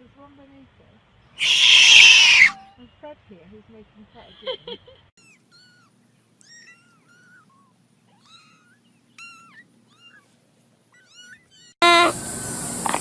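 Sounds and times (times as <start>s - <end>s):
cat meowing: 1.4s - 2.6s, 5.2s - 10.3s.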